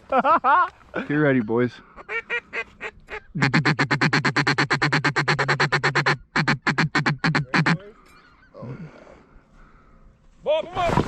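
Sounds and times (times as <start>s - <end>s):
duck call quacks: 2.0s - 8.5s.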